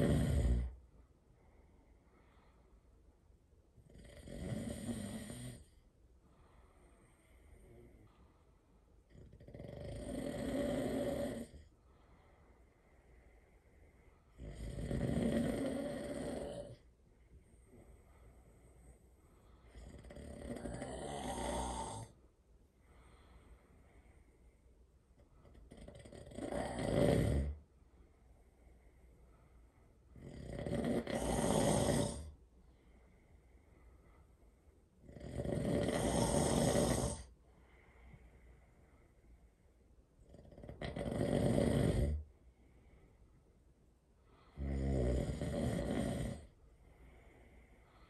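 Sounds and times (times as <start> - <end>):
person snoring loudly: 0.0 - 0.8, 3.8 - 5.7, 9.1 - 11.7, 14.4 - 16.8, 19.7 - 22.2, 25.7 - 27.6, 30.2 - 32.3, 35.0 - 37.3, 40.3 - 42.2, 44.6 - 46.5
quiet breathing: 0.0 - 48.0.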